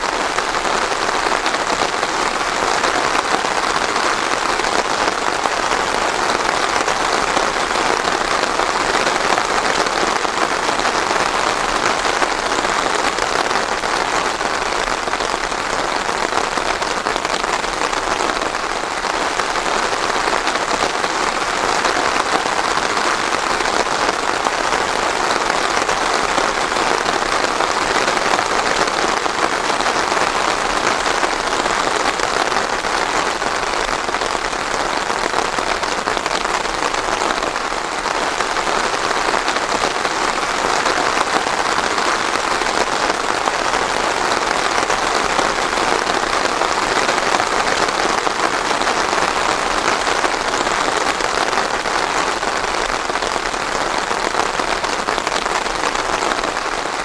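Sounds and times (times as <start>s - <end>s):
rain pattering on a surface: 0.0s - 57.0s.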